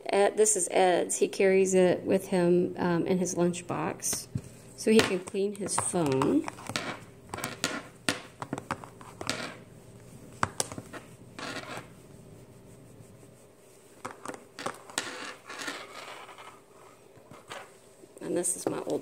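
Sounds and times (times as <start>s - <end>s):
scratchy cloth rustles: 8.8s - 18.2s.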